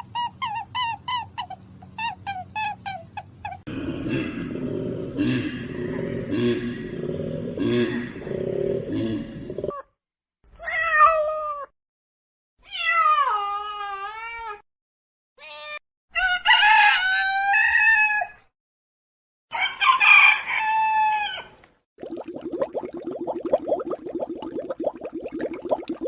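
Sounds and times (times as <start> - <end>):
rooster crowing: 16.2 - 18.4, 19.5 - 21.5.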